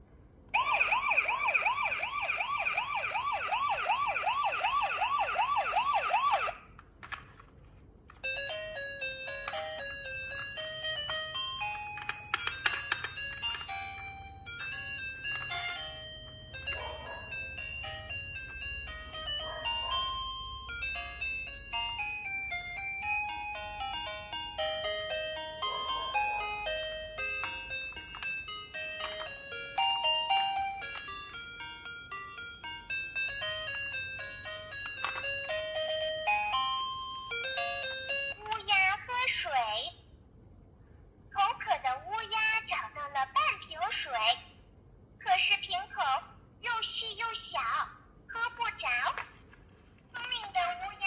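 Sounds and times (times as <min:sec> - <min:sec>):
toy siren warbling: 0:00.6 - 0:06.6, 0:08.3 - 0:28.2, 0:29.0 - 0:38.6
tinkly electronic melody: 0:08.2 - 0:38.5.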